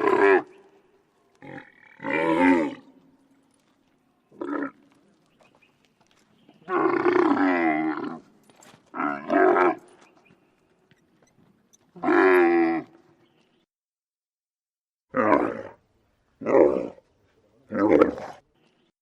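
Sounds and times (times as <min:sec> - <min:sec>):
camel bellowing: 0:01.4 - 0:03.0, 0:04.3 - 0:05.2, 0:06.6 - 0:08.3, 0:08.9 - 0:10.1, 0:11.1 - 0:13.1.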